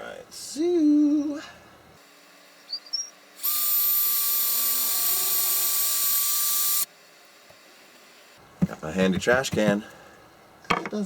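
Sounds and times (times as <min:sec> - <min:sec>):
electric drill boring into wood: 0:03.4 - 0:06.9.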